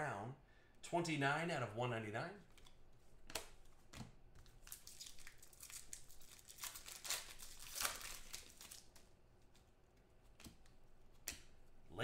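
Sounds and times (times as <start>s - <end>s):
plastic packaging crinkling: 4.4s - 9.1s.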